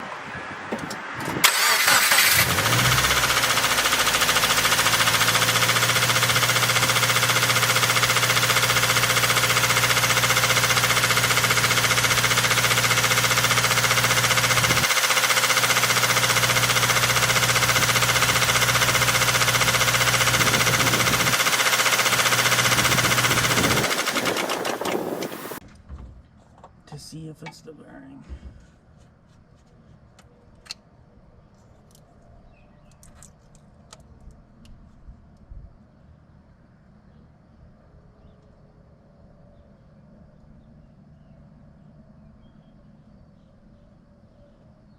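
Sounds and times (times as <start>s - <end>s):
car engine starting and idling: 0.0s - 25.6s
engine knocking: 1.6s - 25.6s.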